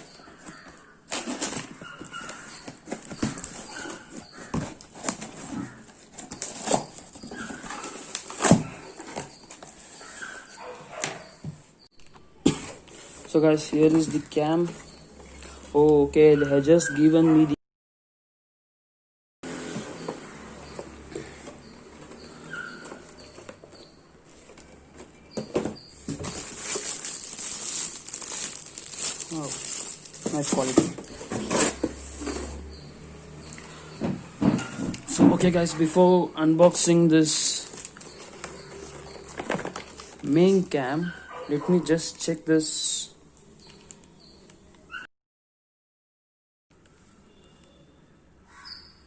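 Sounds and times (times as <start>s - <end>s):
cardboard box packaging rustling: 0.0s - 10.5s, 19.6s - 32.7s, 36.7s - 40.9s
packaging clicks: 25.4s - 31.2s
packaging crinkling: 26.0s - 31.8s.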